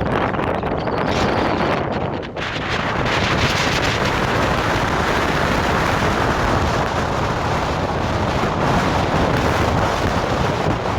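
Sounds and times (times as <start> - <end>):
strong wind buffeting microphone: 0.0 - 10.9.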